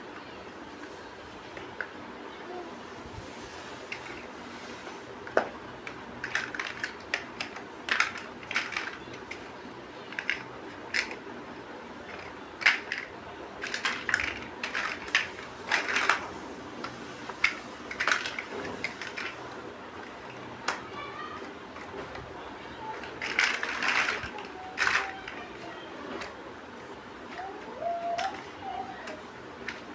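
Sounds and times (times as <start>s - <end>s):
plastic bricks clicking: 5.2s - 9.5s, 10.1s - 11.2s, 12.0s - 16.2s, 16.8s - 19.4s, 22.9s - 25.4s, 27.3s - 29.9s.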